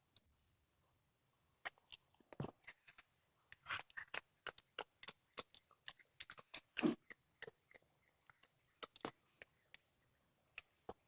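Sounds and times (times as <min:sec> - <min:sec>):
cat chewing with crunches: 0:03.6 - 0:09.6.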